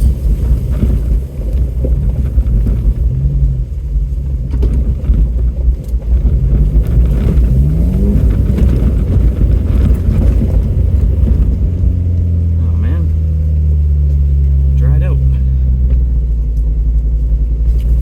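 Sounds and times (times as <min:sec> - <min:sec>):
vehicle engine under load: 0:00.0 - 0:18.0.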